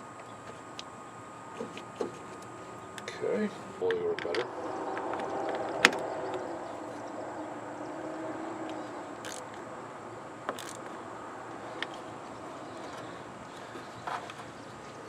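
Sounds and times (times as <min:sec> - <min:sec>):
steady background noise: 0:00.0 - 0:15.0
metallic clicks of hand tools: 0:08.7 - 0:09.6, 0:10.5 - 0:11.0.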